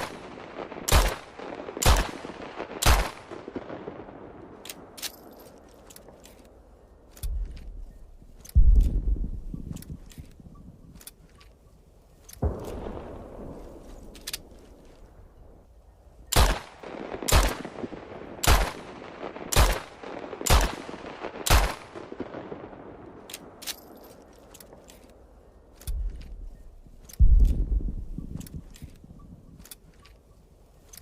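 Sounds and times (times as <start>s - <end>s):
light clicks: 23.2s - 31.0s.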